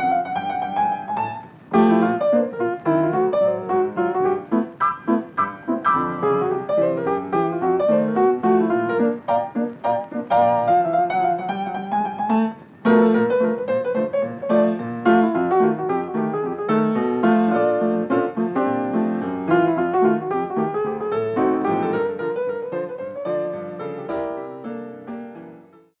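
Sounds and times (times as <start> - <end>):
solo piano melody: 0.0 - 26.0.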